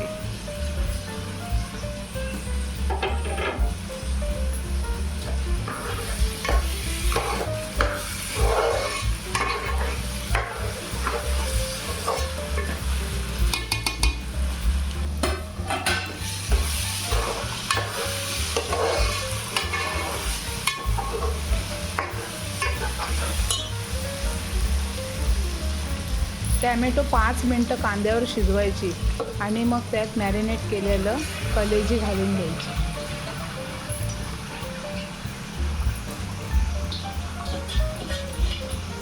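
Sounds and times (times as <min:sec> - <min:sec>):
vegetables sizzling in oil: 0:00.0 - 0:39.0
spoon scraping a pan: 0:05.6 - 0:12.9, 0:15.7 - 0:23.8.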